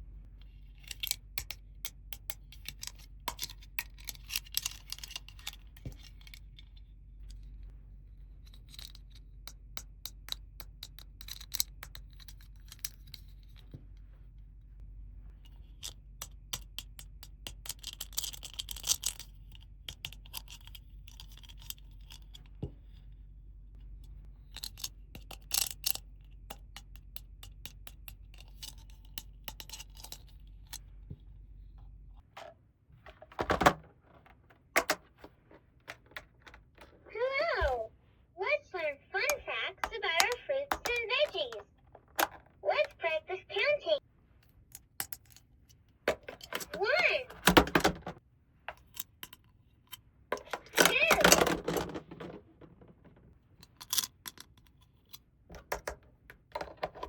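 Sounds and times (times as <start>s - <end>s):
plastic toy pieces clicking: 0.8s - 6.4s, 8.6s - 13.3s, 15.8s - 22.3s, 24.6s - 30.8s, 39.2s - 43.0s, 48.7s - 52.9s, 53.6s - 57.0s.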